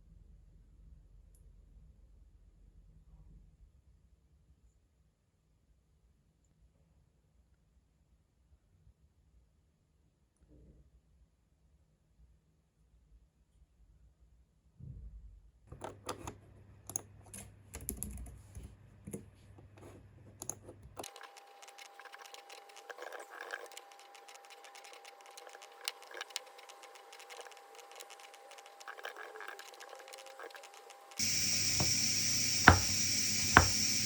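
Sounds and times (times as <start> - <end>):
computer keyboard typing: 21.0 - 31.9
low background hum: 30.0 - 34.0
faint steady high tone: 31.2 - 34.0.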